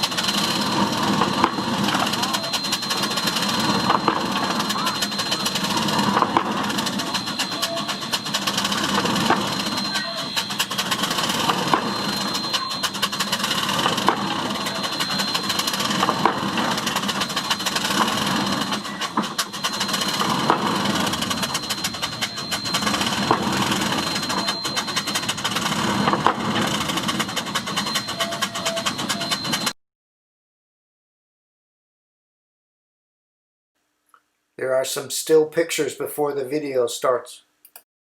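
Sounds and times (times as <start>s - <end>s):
pile driver mechanical clatter: 0.0s - 29.7s.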